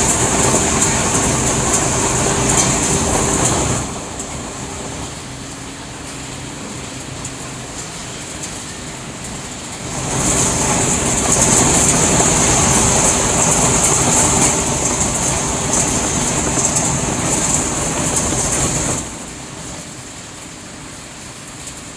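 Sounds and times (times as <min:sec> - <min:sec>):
recycling machinery din: 0:00.0 - 0:05.1, 0:09.8 - 0:20.0
low machinery hum: 0:00.0 - 0:20.7.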